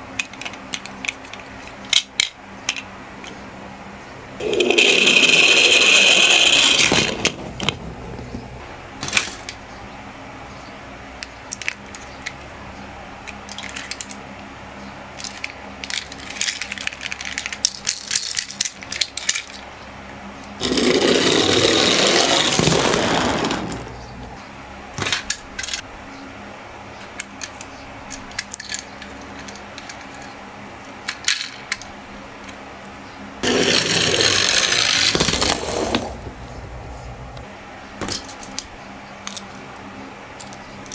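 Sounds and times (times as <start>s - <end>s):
toy cars rolling down slope: 4.4s - 9.6s, 20.6s - 24.4s, 33.4s - 37.4s
toys clicking and clacking: 4.4s - 9.6s, 13.2s - 14.2s, 15.2s - 19.6s, 20.6s - 24.4s, 33.4s - 39.5s.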